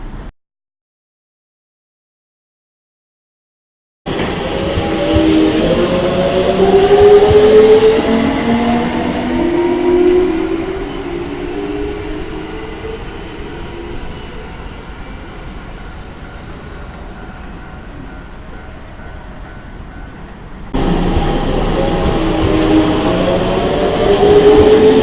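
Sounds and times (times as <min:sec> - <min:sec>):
train inverter whining: 0:04.1 - 0:18.1, 0:20.7 - 0:25.0.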